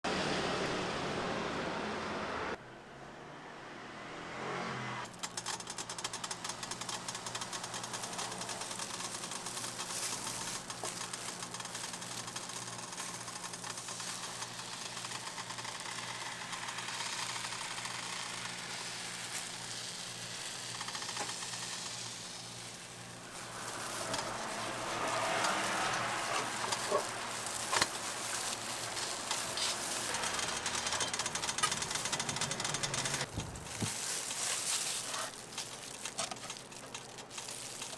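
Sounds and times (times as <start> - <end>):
sharp clicks and knocks: 5.1 - 17.6, 23.5 - 34.0
crepe sizzling on griddle: 5.1 - 37.9
utensil sounds: 5.1 - 37.9.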